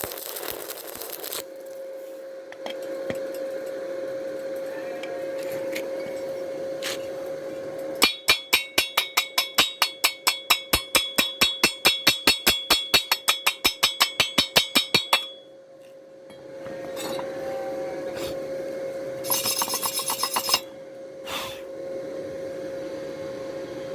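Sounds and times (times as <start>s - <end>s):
steady hum: 0.0s - 23.9s
chipping hammer striking steel tube: 8.0s - 15.4s.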